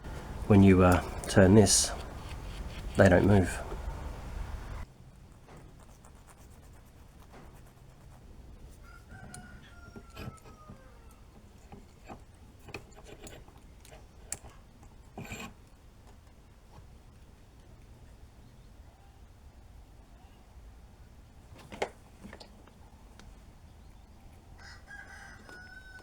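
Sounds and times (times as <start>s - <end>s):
distant rooster crowing: 8.8s - 11.4s, 24.5s - 26.0s
small parts clicking and knocking: 9.2s - 16.2s.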